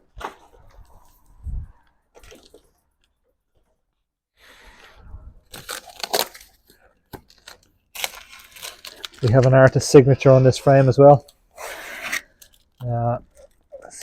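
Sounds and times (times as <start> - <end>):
packaging rustling and crinkling: 2.1 - 2.8, 5.4 - 11.3.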